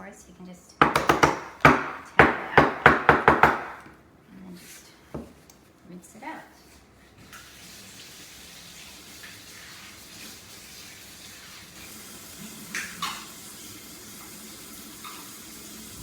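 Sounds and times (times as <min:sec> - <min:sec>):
sharp knocks: 0:00.8 - 0:03.8
water running from tap: 0:07.2 - 0:16.0.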